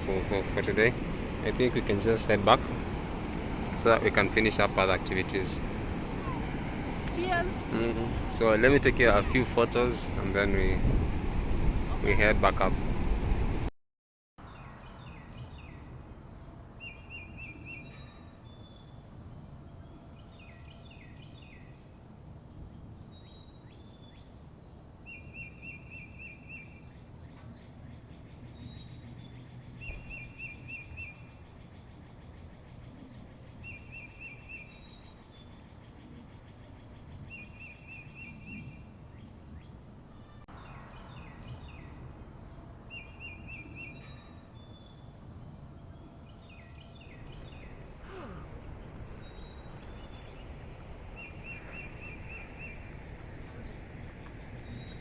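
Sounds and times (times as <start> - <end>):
downward-slurred bird whistles: 25.1 - 27.4, 28.2 - 31.4, 37.2 - 38.8, 42.9 - 45.2.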